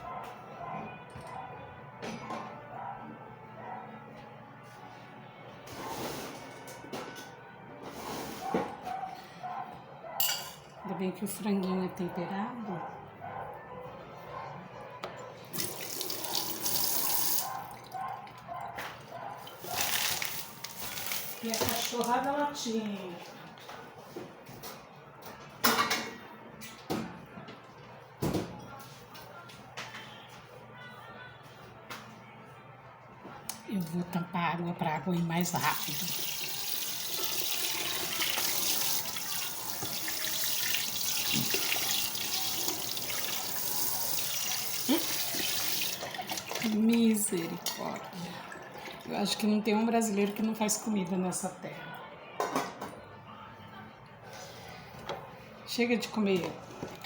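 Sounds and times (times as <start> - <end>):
tap running water into sink: 15.6 - 17.5, 35.6 - 46.8.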